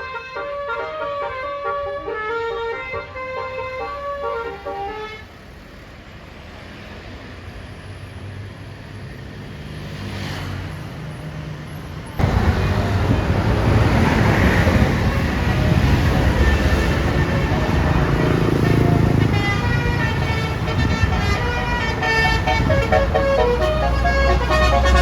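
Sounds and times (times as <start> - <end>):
bus horn melody: 0.0 - 5.3, 14.4 - 25.0
rush of traffic noise: 0.0 - 25.0
bus diesel engine running: 12.0 - 25.0.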